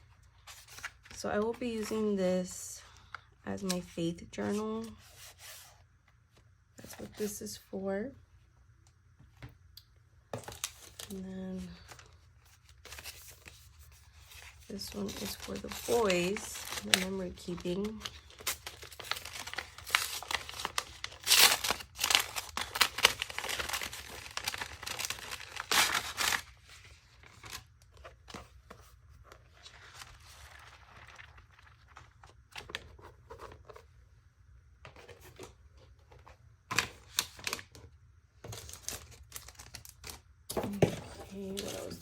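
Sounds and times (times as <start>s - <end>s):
packaging crinkling and tearing: 14.4s - 28.1s, 38.5s - 40.2s.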